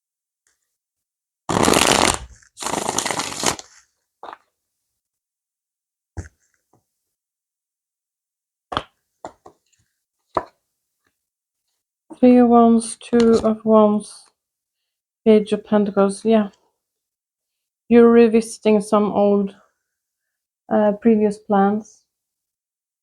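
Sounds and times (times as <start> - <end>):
cards being riffle shuffled: 1.5 - 3.9.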